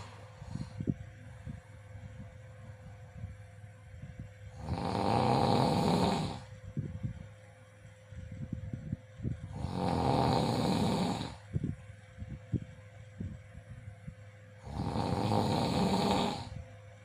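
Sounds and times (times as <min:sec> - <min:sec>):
person snoring: 0:04.6 - 0:06.5, 0:09.5 - 0:11.4, 0:14.6 - 0:16.6.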